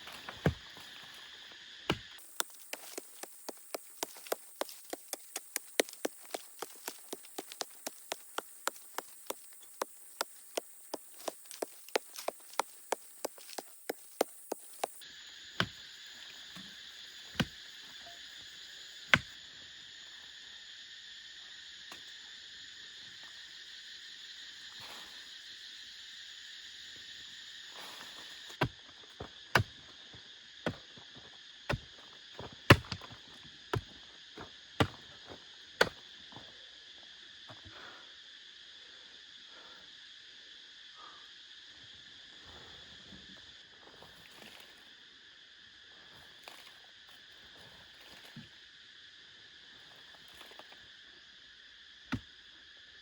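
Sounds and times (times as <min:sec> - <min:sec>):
insect drone: 0:00.0 - 0:53.0
hand tool striking wood: 0:00.1 - 0:00.8, 0:01.9 - 0:15.0, 0:17.3 - 0:17.6, 0:29.5 - 0:29.7, 0:31.7 - 0:31.9, 0:32.7 - 0:33.1.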